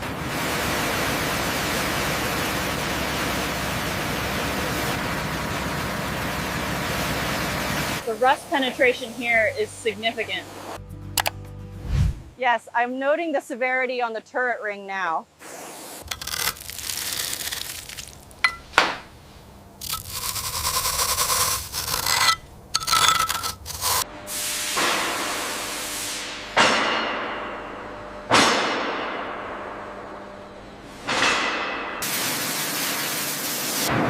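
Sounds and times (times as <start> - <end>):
metal clanging: 21.8 - 24.0.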